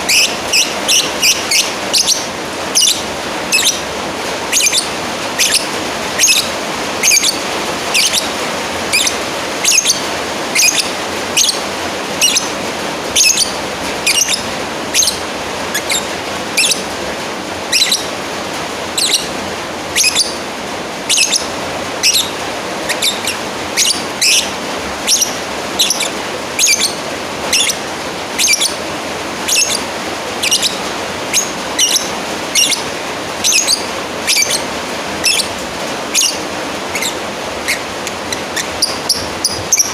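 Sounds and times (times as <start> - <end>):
lovebird shrill calls: 0.0 - 3.9, 4.5 - 16.9, 17.7 - 18.2, 18.9 - 28.8, 29.4 - 39.9.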